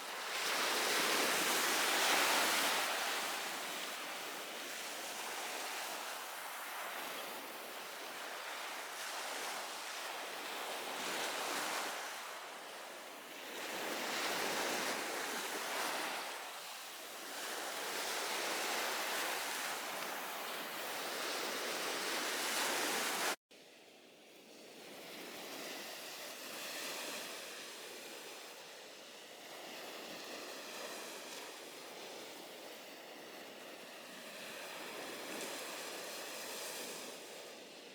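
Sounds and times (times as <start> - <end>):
sea waves washing onto beach: 0.0 - 23.4.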